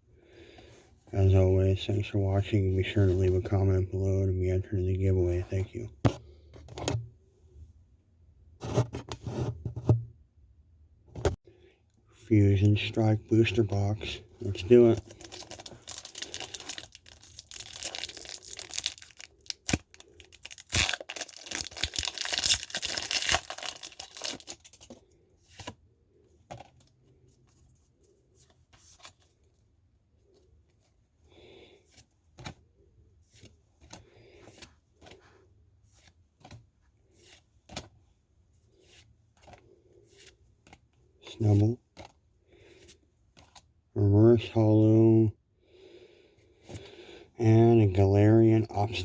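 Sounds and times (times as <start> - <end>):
foil pack tearing and crinkling: 15.1 - 24.8.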